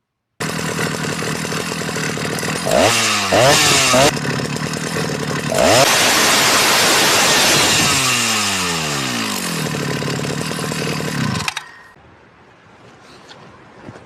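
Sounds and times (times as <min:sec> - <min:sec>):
chainsaw idling and revving: 0:00.4 - 0:11.6.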